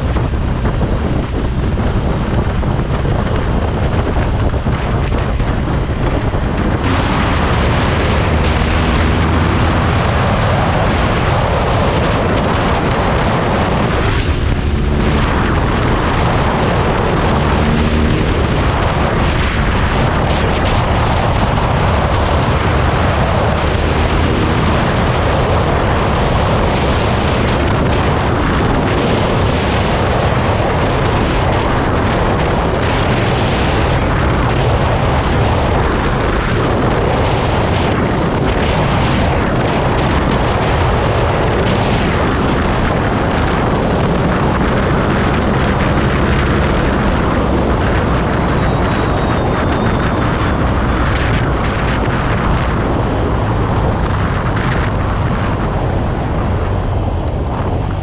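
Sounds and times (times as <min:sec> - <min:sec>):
motorcycle engine running: 0:00.0 - 0:29.6, 0:30.3 - 0:58.0
wind noise on microphone: 0:00.0 - 0:58.0.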